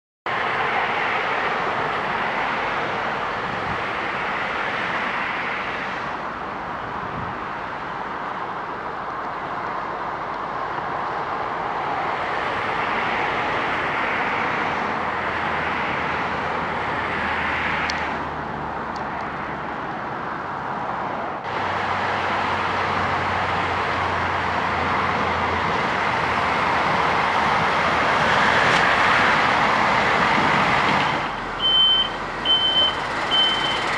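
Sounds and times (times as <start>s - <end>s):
diesel paving machinery running: 21.4s - 33.9s.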